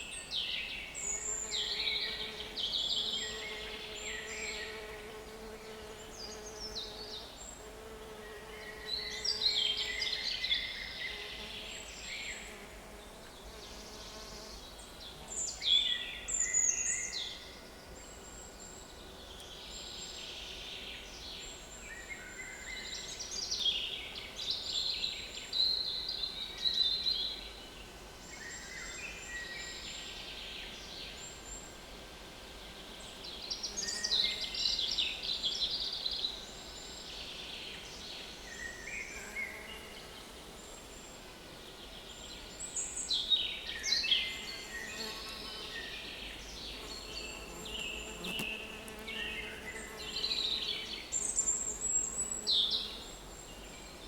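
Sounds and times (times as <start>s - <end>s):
flies buzzing: 44.3s - 53.2s.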